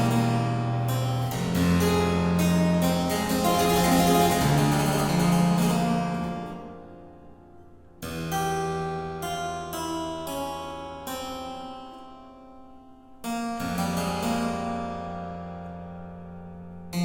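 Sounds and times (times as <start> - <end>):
harpsichord music: 0.0 - 7.6.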